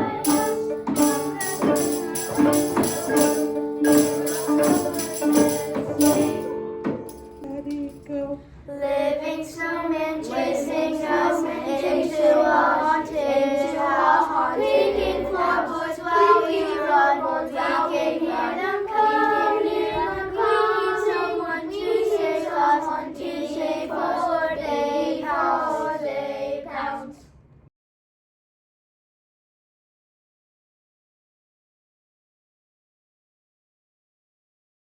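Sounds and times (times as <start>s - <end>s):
children singing together: 0.0s - 6.6s, 8.8s - 27.2s.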